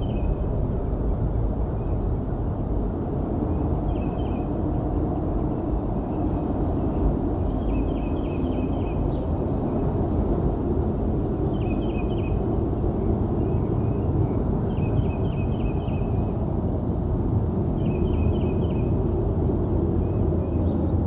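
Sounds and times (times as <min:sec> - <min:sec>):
deep steady rumbling: 0:00.0 - 0:21.0
bird chirping: 0:03.9 - 0:04.5, 0:11.4 - 0:12.4, 0:17.8 - 0:18.9.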